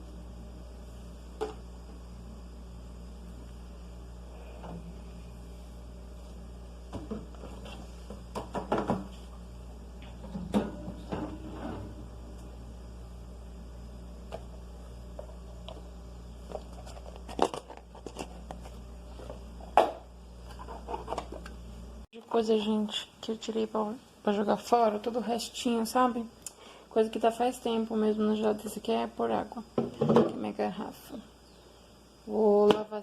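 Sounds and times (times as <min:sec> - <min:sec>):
refrigerator low hum: 0:00.0 - 0:33.0
plastic containers knocking and rustling: 0:06.9 - 0:09.2, 0:16.5 - 0:20.0, 0:29.8 - 0:30.4.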